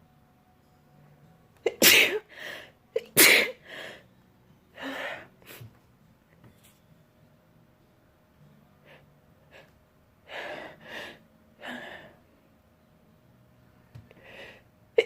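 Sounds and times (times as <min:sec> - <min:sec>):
person sneezing: 0:01.7 - 0:02.2.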